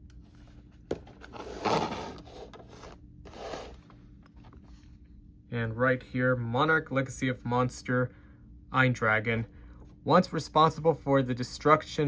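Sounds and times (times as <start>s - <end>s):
cardboard rubbing and scraping: 1.1s - 3.8s.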